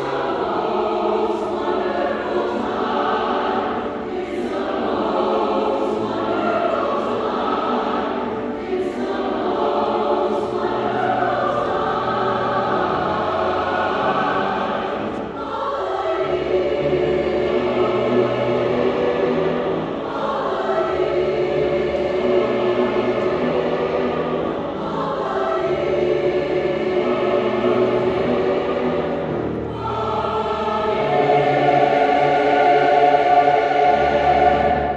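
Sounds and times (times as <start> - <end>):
choir singing held chords: 0.0 - 34.9.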